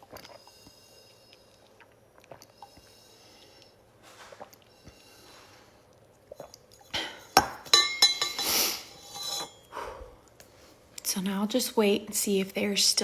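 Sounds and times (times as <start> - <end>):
drinking through a straw: 0.0 - 6.9
ceramic mug clinking: 7.4 - 9.7.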